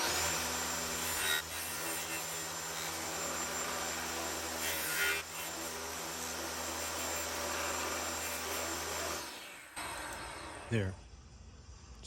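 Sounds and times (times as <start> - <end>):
table saw cutting wood: 0.0 - 10.8.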